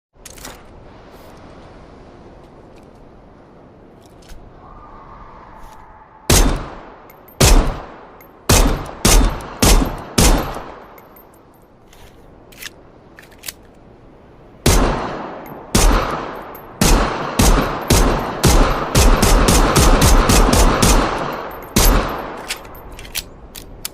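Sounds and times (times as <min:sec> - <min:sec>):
pistol shots with echo: 0:08.5 - 0:10.8, 0:14.7 - 0:22.4.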